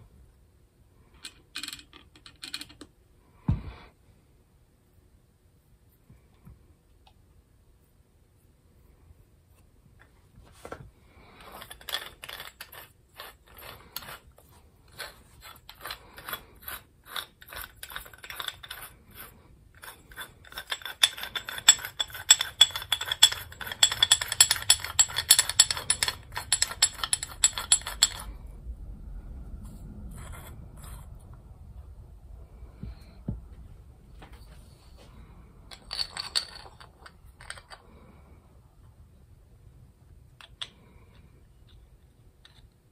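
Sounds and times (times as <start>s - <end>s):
ratchet-like metal clicking: 19.8s - 28.3s.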